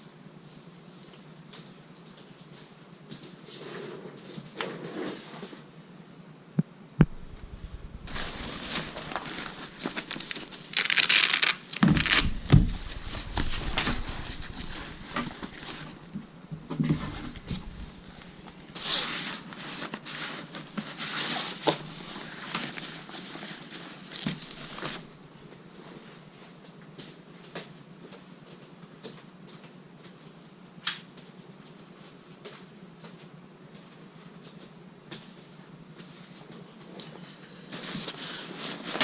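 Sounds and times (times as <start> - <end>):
fabric and packaging rustling: 7.0 - 25.2
zipper zipping: 7.1 - 15.9.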